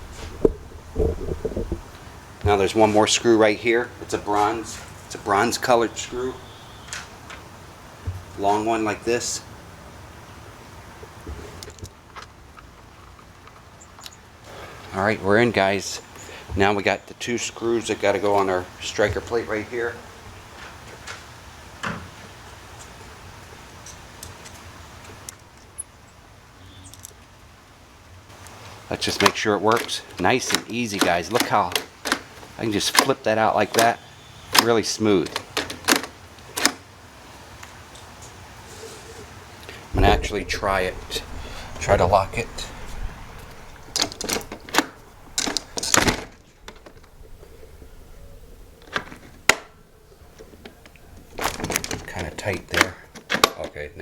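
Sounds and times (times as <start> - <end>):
deadbolt clicking and scraping: 30.5 - 32.3, 42.4 - 47.4
person speaking: 39.9 - 43.1
low steady hum: 39.9 - 52.6.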